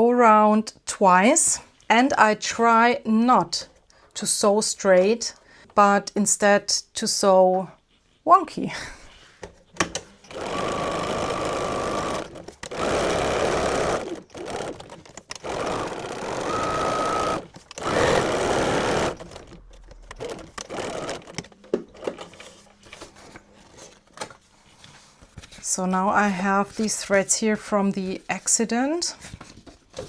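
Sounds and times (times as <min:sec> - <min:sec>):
sewing machine motor whine: 0:10.3 - 0:21.5
sewing machine stitching paper: 0:10.3 - 0:22.5.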